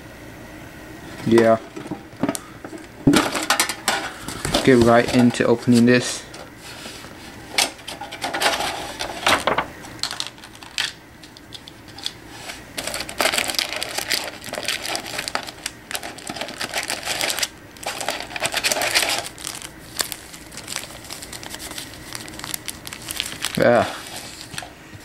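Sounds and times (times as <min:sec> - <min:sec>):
plastic crinkling: 0:07.9 - 0:25.0.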